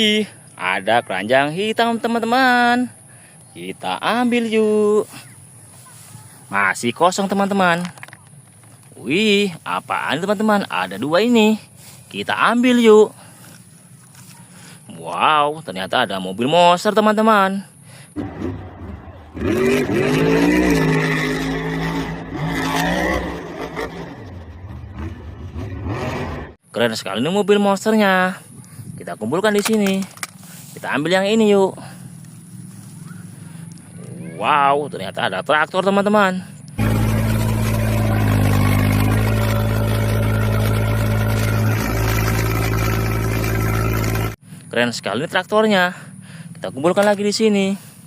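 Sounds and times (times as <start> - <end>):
truck engine revving: 18.2 - 26.6, 36.8 - 44.4
engine idling: 36.5 - 44.4.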